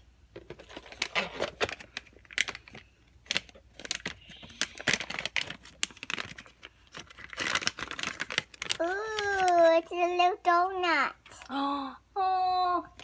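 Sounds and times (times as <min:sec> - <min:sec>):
plastic wrapper crinkling and tearing: 0:00.5 - 0:10.4.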